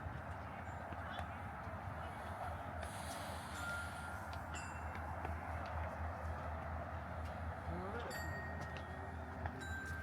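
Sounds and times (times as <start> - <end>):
low city hum: 0.0 - 10.0.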